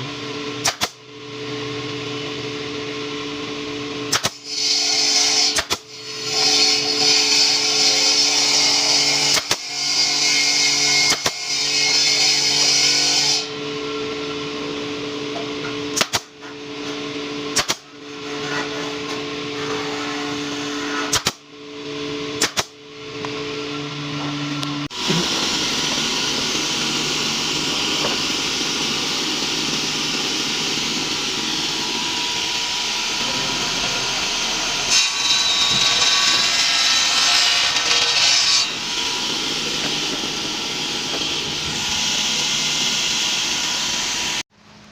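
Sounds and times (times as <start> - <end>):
power tool cutting wood: 3.2 - 44.4
power tool motor humming: 16.9 - 44.4.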